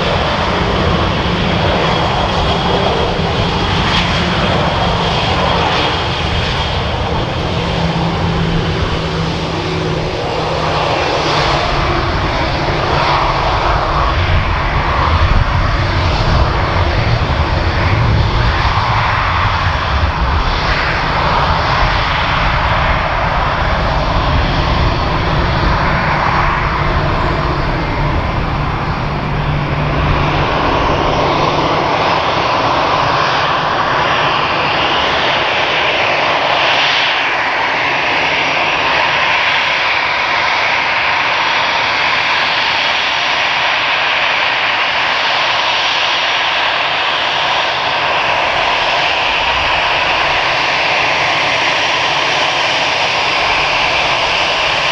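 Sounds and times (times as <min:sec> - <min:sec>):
deep engine rumble: 0:00.0 - 0:36.5
jet engines rushing and whining: 0:00.0 - 0:54.9.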